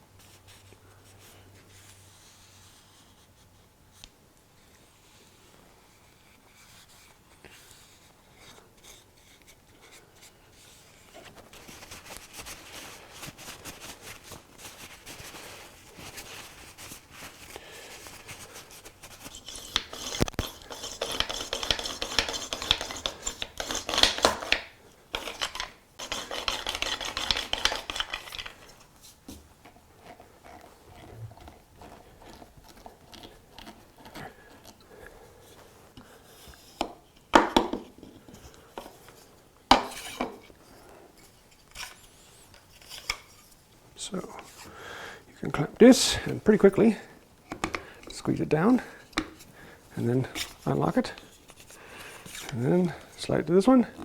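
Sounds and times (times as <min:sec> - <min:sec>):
hand tool scraping and rubbing: 0:07.6 - 0:37.2, 0:37.9 - 0:44.8, 0:47.8 - 0:54.0.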